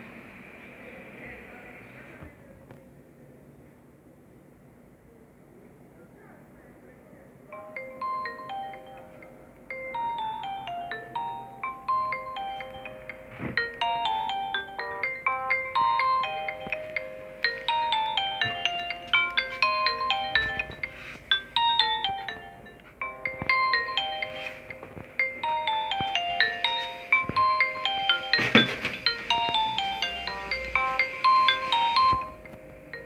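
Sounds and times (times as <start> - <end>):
mobile phone ringtone melody: 7.6 - 33.0.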